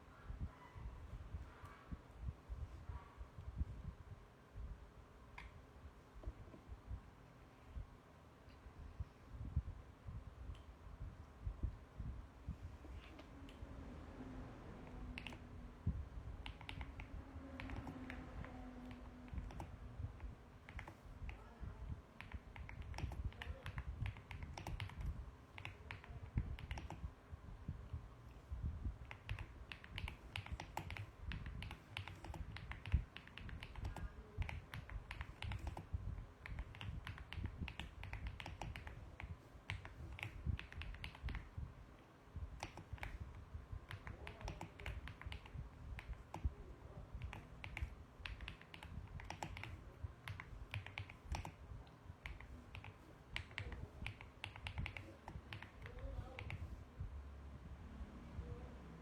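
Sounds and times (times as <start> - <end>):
mechanical keyboard key clicks: 16.4 - 21.4, 22.2 - 27.1, 29.1 - 41.5, 43.9 - 46.5, 47.2 - 51.6.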